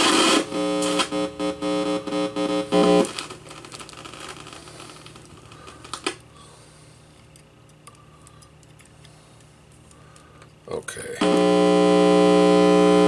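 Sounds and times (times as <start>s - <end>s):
radio static and hiss: 0.0s - 5.5s, 10.7s - 13.0s
low hum: 0.3s - 9.2s, 11.2s - 13.0s.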